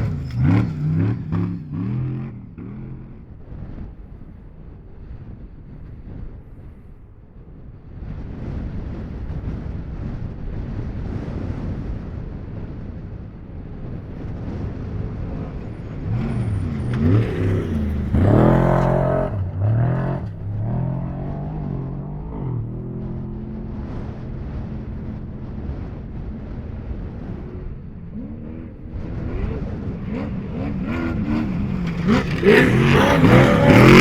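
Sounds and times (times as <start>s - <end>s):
race vehicle engine revving: 0.0s - 3.5s, 13.9s - 34.0s
low steady rumble: 0.0s - 8.0s, 11.7s - 34.0s.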